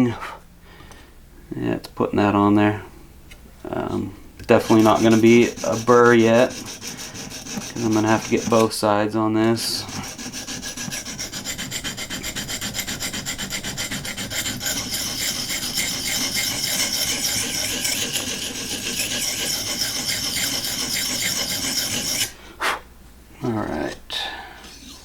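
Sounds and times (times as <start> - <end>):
abrasive scrubbing knife edge: 4.5 - 8.8, 9.4 - 22.4, 24.6 - 25.0.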